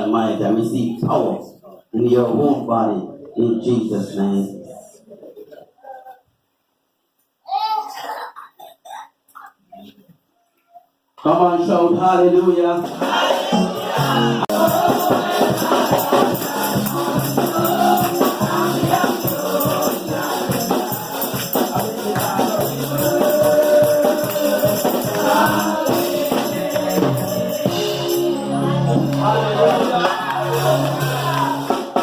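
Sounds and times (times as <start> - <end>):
congregation singing gospel song: 11.2 - 32.0
tambourine shaken: 13.8 - 32.0.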